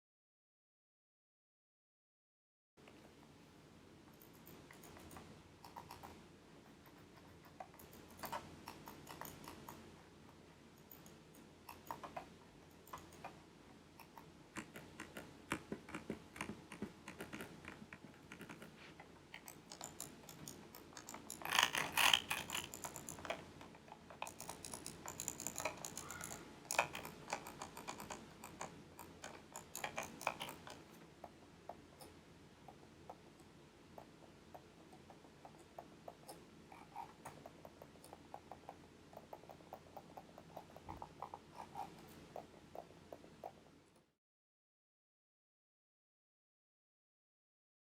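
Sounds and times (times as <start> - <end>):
computer mouse clicking: 4.1 - 6.2, 6.8 - 10.0, 10.8 - 13.4, 14.0 - 44.1.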